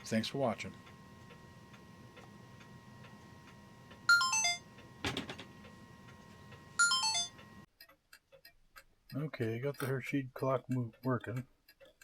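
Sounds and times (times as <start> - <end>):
descending ringtone notes: 4.1 - 4.7, 6.8 - 7.4.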